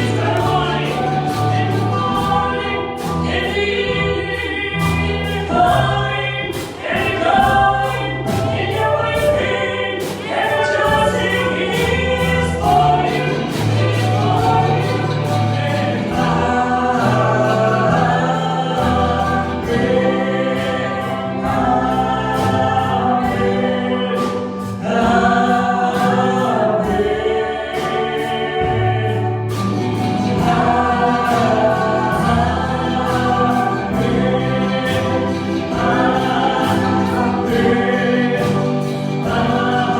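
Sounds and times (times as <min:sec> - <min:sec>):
choir singing gospel: 0:00.0 - 0:39.9
instrumental accompaniment with beat: 0:00.0 - 0:39.9.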